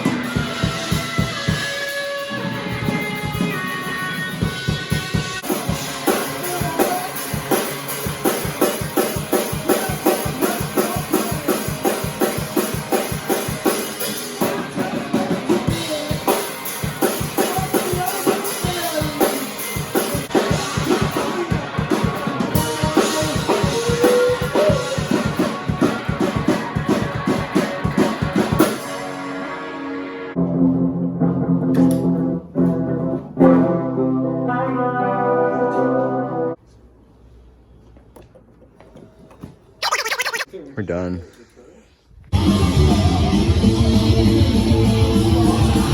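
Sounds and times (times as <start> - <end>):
rock band playing: 0.0 - 29.9, 42.4 - 45.9
fast drum beat: 4.7 - 28.8.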